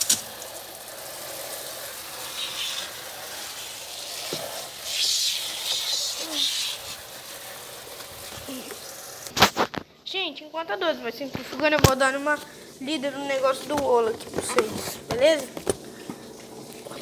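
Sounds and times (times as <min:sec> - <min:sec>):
washing machine spinning: 0:00.0 - 0:09.3, 0:11.9 - 0:17.0
hiss: 0:00.0 - 0:09.4.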